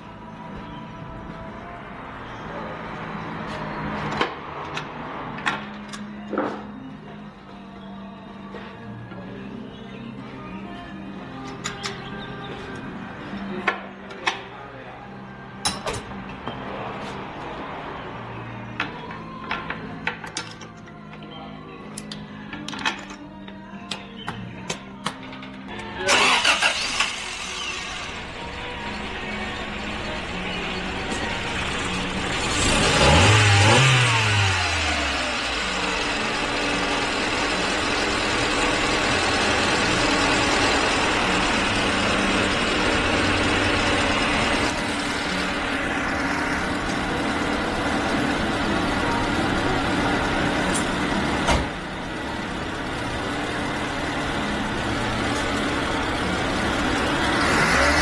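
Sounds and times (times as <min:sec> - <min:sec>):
car engine idling and revving: 0:00.0 - 0:07.3, 0:25.8 - 0:58.0.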